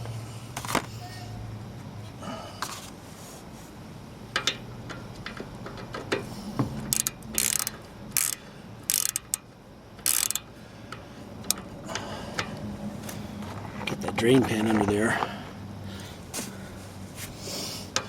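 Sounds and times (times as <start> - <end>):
ratchet wrench clicking: 6.9 - 11.7
ratchet wrench ratcheting: 6.9 - 11.7.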